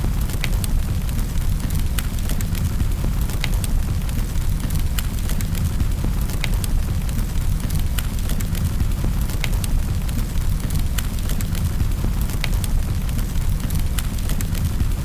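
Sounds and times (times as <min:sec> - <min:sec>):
low rumble of flames: 0:00.0 - 0:15.0.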